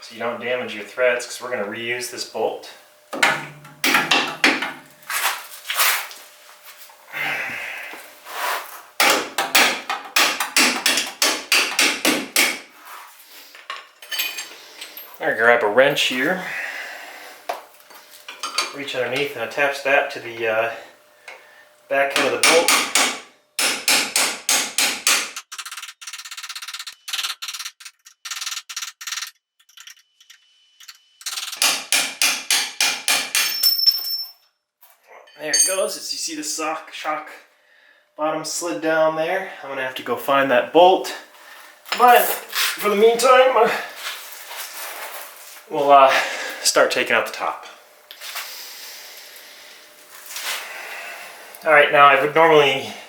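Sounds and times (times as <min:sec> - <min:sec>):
hammer striking steel bolt: 0:03.2 - 0:04.8
metallic ring: 0:33.4 - 0:34.5, 0:35.2 - 0:36.0.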